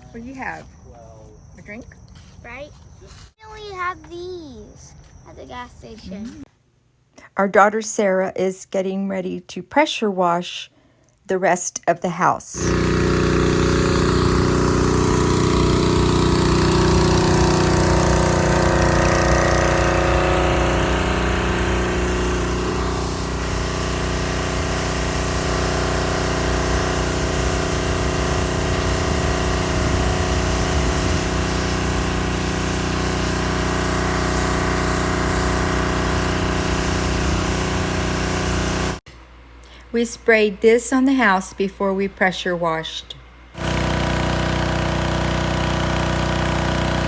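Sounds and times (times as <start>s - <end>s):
hissing water spray: 12.6s - 39.0s
pressure washer engine and pump: 12.6s - 39.0s, 43.6s - 47.0s.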